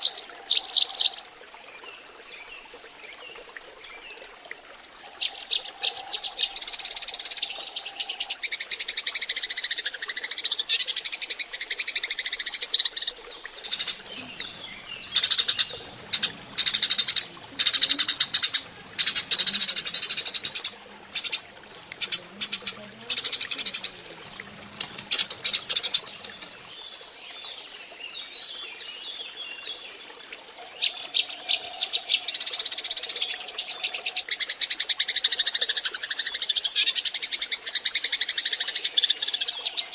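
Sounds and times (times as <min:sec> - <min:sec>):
flock of sparrows chirping: 0:13.6 - 0:26.6.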